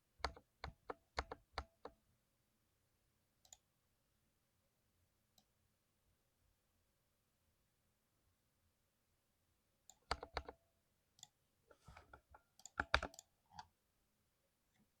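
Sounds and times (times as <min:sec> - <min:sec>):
mechanical keyboard keys clicking: 0:12.6 - 0:13.2.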